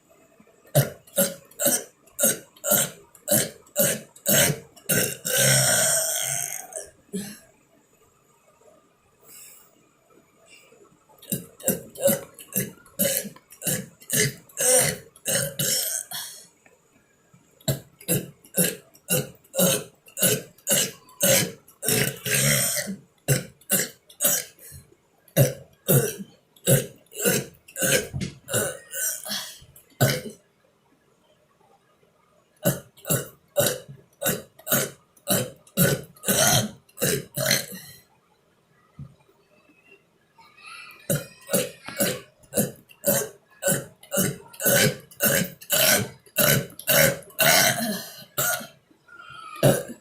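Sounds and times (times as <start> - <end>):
man burping: 0.7 - 7.4, 11.2 - 16.5, 17.7 - 24.8, 25.4 - 30.4, 32.6 - 38.0, 41.1 - 48.8, 49.5 - 50.0.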